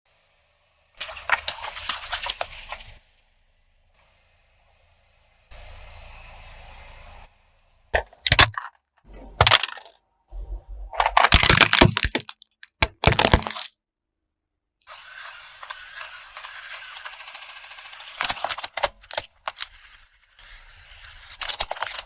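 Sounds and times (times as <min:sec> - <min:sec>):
faint hiss: 0:00.1 - 0:07.9
objects cracking under car tyre: 0:11.0 - 0:13.8.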